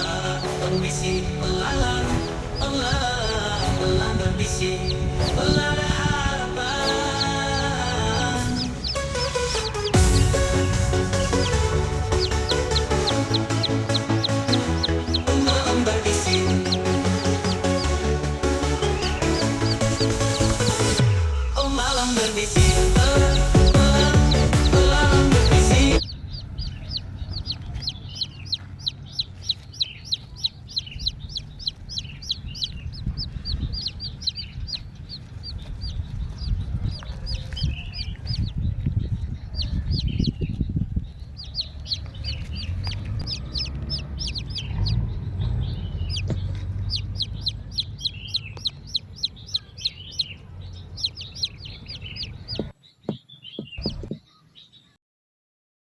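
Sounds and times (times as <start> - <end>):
chicks peeping: 0.0 - 21.1, 21.8 - 54.9
music: 0.0 - 26.0
low steady rumble: 0.0 - 52.7.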